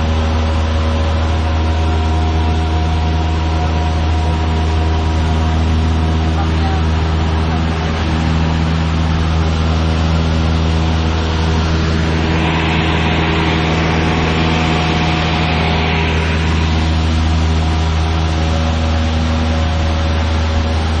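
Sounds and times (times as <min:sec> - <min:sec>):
propeller plane engine droning: 0:00.0 - 0:21.0.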